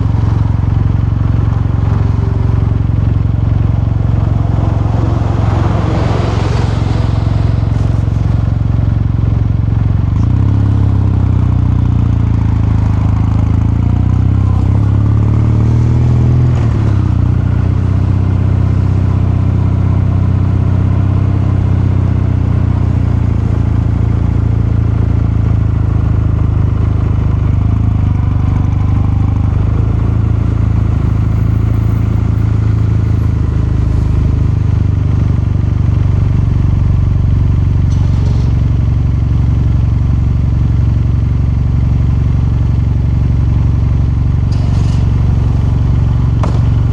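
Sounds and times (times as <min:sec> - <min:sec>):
motorcycle engine revving: 0:00.0 - 0:19.4, 0:37.2 - 0:46.9.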